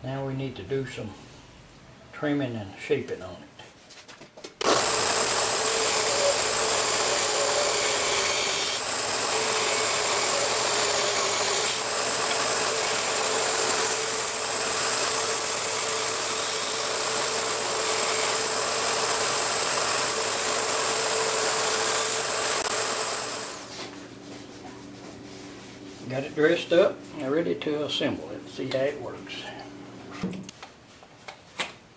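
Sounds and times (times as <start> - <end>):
power tool trimming plywood: 4.6 - 23.8.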